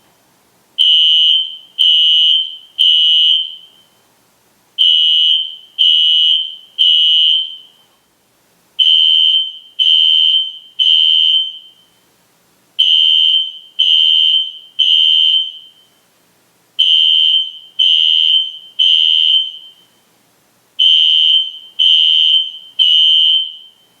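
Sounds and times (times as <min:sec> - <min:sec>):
fire alarm horn blasts: 0:00.8 - 0:04.0, 0:04.8 - 0:07.8, 0:08.8 - 0:12.0, 0:12.8 - 0:16.0, 0:16.8 - 0:20.0, 0:20.8 - 0:23.9.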